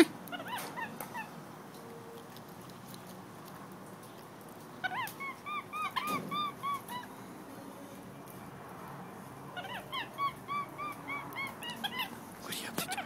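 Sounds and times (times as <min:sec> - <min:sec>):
animal squeaky calls: 0:00.0 - 0:01.4, 0:04.8 - 0:07.2, 0:09.5 - 0:13.0.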